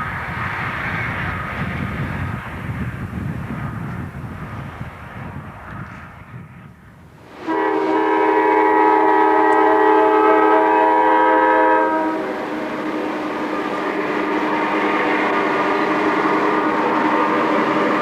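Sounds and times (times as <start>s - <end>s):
diesel locomotive rumble: 0.0s - 18.0s
locomotive air horn chord: 7.4s - 18.0s.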